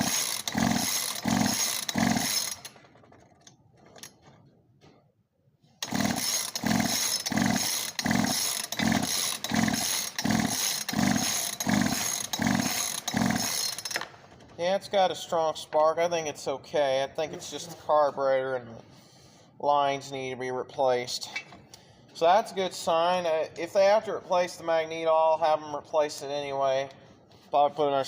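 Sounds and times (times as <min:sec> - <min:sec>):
chainsaw pull starter strokes: 0:00.0 - 0:04.5, 0:05.8 - 0:14.8.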